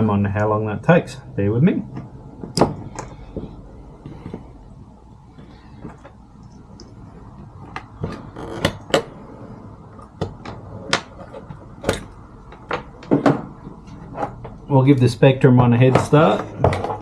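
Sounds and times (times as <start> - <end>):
handling clicks and knocks: 9.9 - 14.7.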